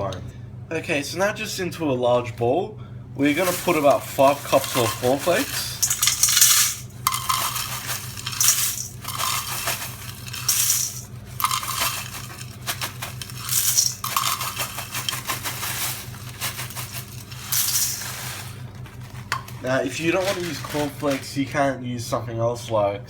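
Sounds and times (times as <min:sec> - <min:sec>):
cereal flakes pouring into bowl: 0:03.2 - 0:21.4.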